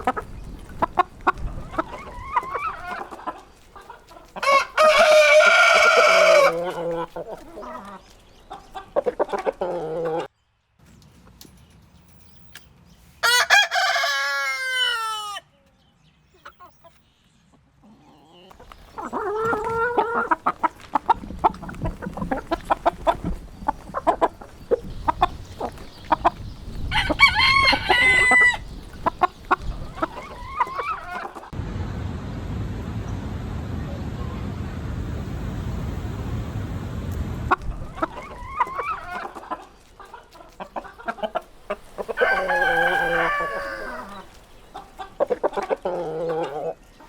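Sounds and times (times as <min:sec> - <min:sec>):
chicken clucks and clicks: 0:00.0 - 0:12.8, 0:13.8 - 0:31.6, 0:37.0 - 0:47.0
rooster crowing: 0:04.4 - 0:06.8, 0:13.2 - 0:15.4, 0:26.9 - 0:28.6, 0:42.1 - 0:44.3.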